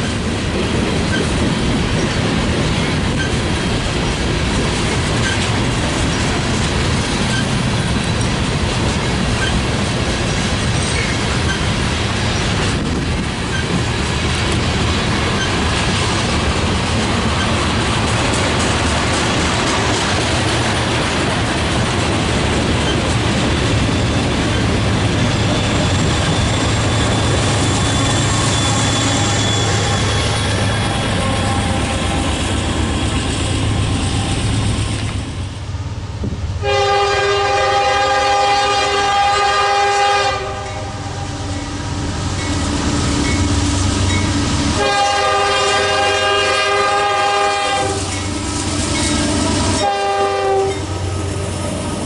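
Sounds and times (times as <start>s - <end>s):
train rolling past: 0.0s - 52.0s
locomotive air horn blasts: 36.6s - 41.5s, 44.8s - 51.4s.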